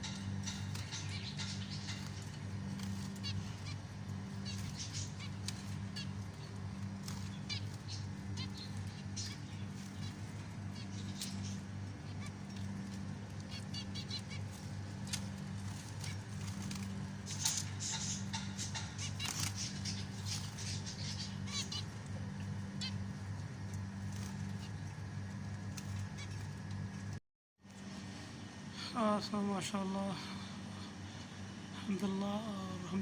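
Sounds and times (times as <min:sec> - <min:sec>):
zebra finches honking chirps: 0:00.0 - 0:23.1
steady low hum: 0:00.0 - 0:33.0.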